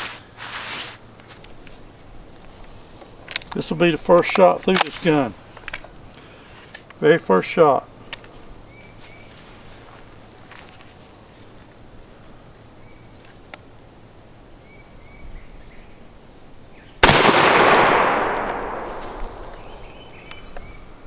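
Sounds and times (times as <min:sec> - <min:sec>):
shotgun shot with echo: 0:17.0 - 0:20.1.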